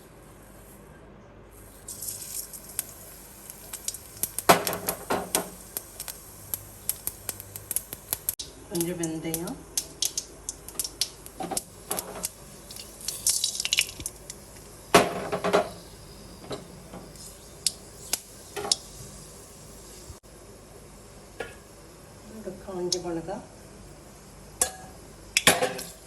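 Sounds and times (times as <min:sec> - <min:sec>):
seeds clattering against pan: 0:01.8 - 0:15.8
mustard seeds popping in oil: 0:01.8 - 0:19.1, 0:22.8 - 0:23.2, 0:24.6 - 0:26.0.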